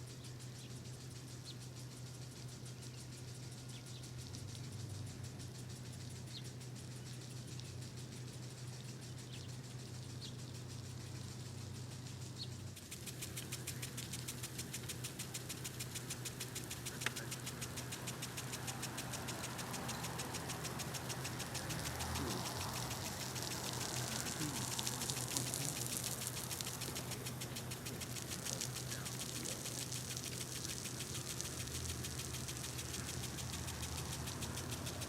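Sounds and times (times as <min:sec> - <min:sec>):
rapid even ticking: 0:00.6 - 0:35.0
motor humming: 0:12.4 - 0:35.0.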